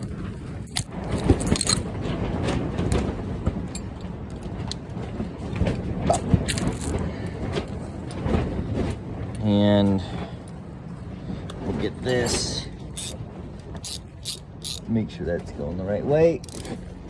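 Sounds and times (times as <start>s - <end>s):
steady low rumble: 0.0s - 17.0s
ratchet clicking on bolts: 13.0s - 13.2s, 13.8s - 14.9s, 16.4s - 16.8s.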